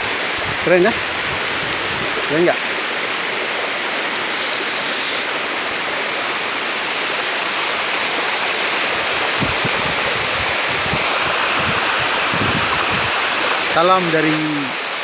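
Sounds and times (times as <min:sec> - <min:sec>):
wind buffeting microphone: 0:00.0 - 0:02.5, 0:08.6 - 0:14.7
waterfall rushing: 0:00.0 - 0:15.0.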